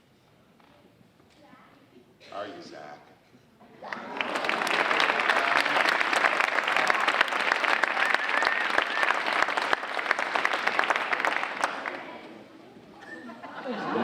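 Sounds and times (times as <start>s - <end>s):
children applauding: 3.8s - 12.3s.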